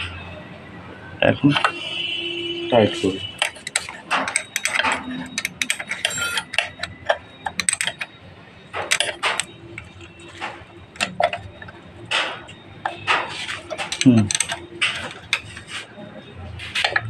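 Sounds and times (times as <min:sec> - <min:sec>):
hand tool metallic clicks and rattles: 0:03.4 - 0:08.1, 0:08.9 - 0:15.7.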